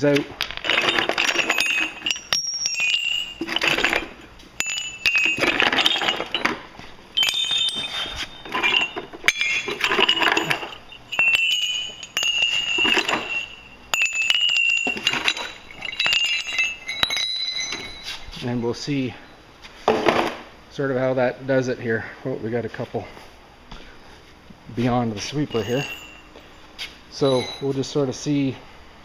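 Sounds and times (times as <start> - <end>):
metal spikes clattering: 0.0 - 18.7, 25.2 - 26.4, 27.2 - 27.8.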